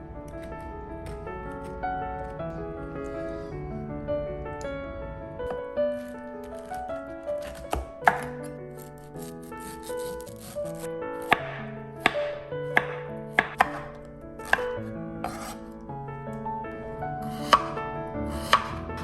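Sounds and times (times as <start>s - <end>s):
soft background music: 0.0s - 19.0s
knife chopping on cutting board: 7.4s - 8.4s, 9.2s - 15.6s, 18.4s - 18.8s.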